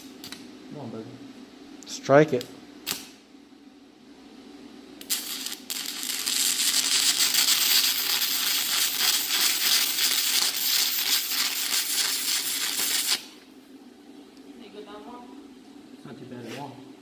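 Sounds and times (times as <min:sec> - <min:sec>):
welding arc crackling: 0:05.0 - 0:13.4.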